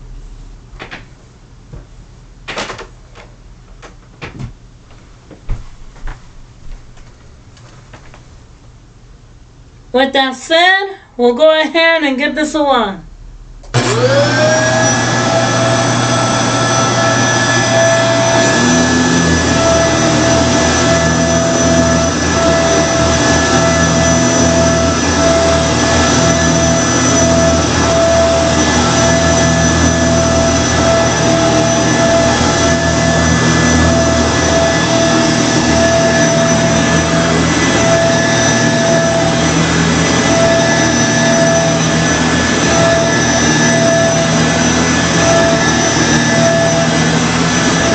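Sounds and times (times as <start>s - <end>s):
vacuum cleaner motor whine: 13.7s - 47.9s.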